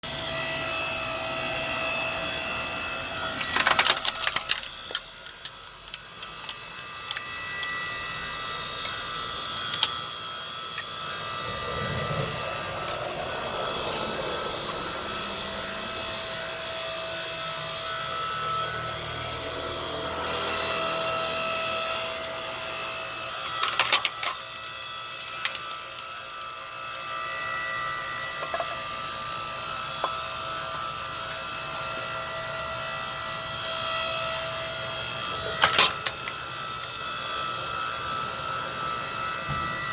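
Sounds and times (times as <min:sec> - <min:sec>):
hydraulic pump hum: 0:06.0 - 0:33.0, 0:39.3 - 0:39.9.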